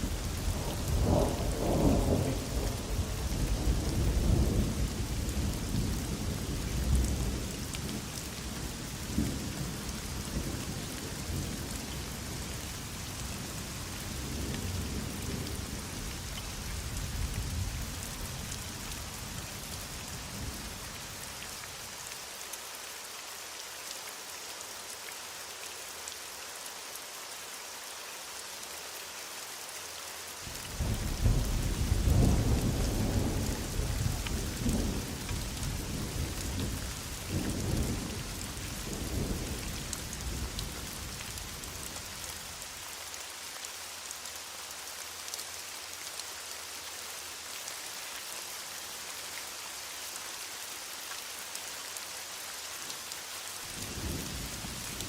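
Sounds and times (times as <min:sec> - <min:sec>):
heavy rain falling: 0:00.0 - 0:55.0
rolling thunder rumble: 0:30.8 - 0:38.1.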